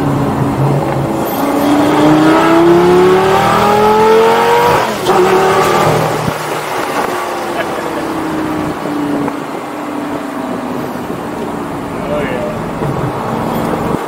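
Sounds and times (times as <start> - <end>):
sports car engine accelerating: 0.0 - 14.0.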